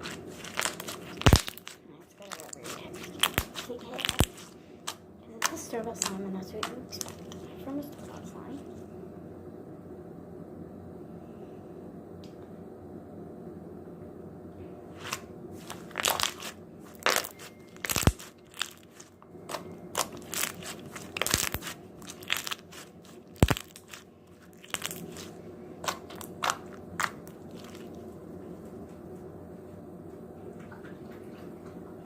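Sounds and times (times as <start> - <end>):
slime crackling and popping: 0.0 - 7.4, 15.6 - 28.0.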